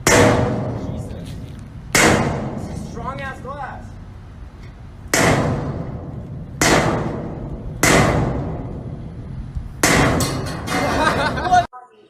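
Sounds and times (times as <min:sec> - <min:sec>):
heavy blows against thick glass: 0:00.0 - 0:03.1, 0:05.0 - 0:11.0.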